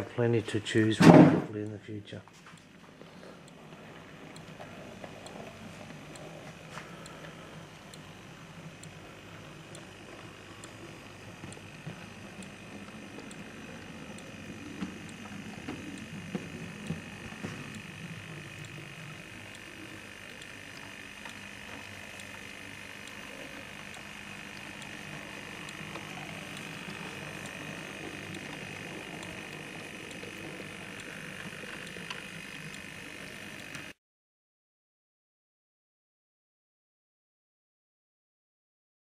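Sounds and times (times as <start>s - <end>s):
model train motor whir: 3.1s - 34.0s
wheels ticking on track: 3.4s - 34.0s.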